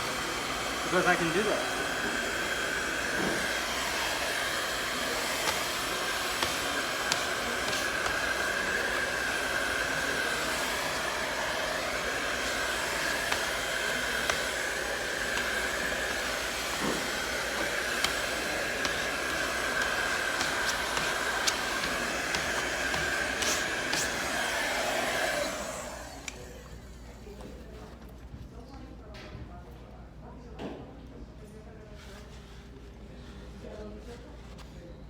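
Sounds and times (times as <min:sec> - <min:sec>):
heat gun blowing with whine: 0:00.0 - 0:27.0.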